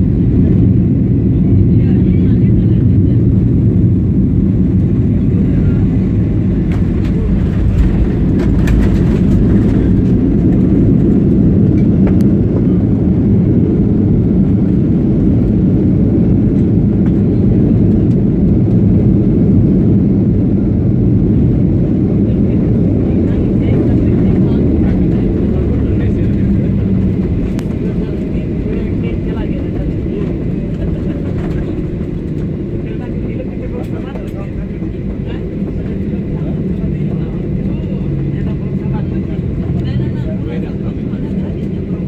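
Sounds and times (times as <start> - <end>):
airplane engine and airflow rumble: 0.0 - 42.0.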